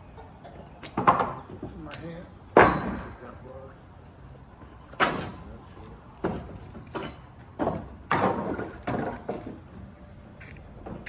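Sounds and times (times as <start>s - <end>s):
demolition bar striking wood: 2.6s - 3.2s.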